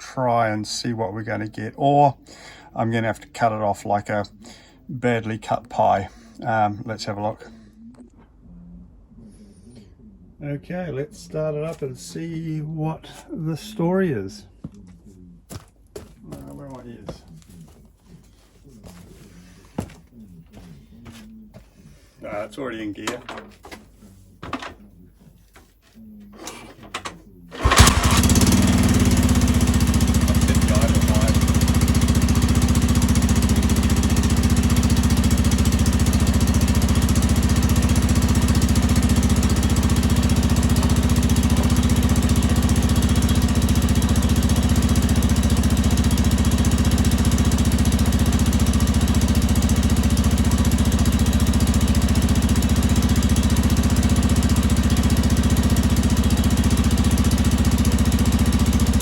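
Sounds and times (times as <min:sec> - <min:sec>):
motorcycle engine idling: 0:27.5 - 0:59.0.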